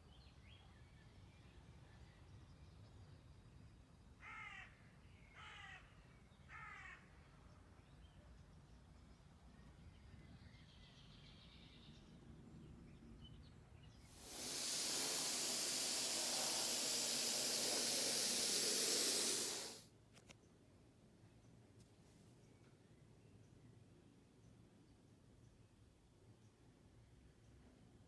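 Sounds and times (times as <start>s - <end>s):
spray gun hissing compressed air: 14.2s - 19.8s.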